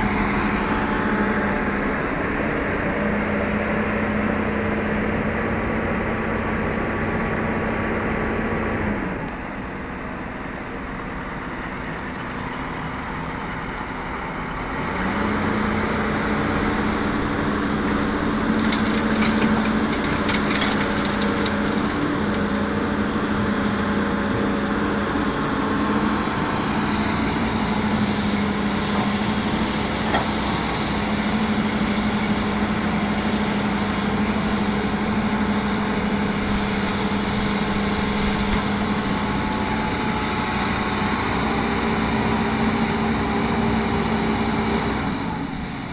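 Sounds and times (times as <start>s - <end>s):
excavator diesel engine running: 0.0s - 45.9s
crackling and rattling: 18.2s - 23.3s.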